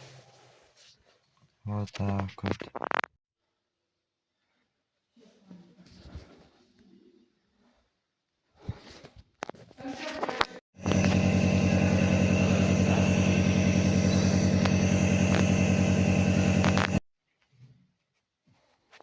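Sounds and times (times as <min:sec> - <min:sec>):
motor running with pulsing pitch: 0:10.8 - 0:17.0.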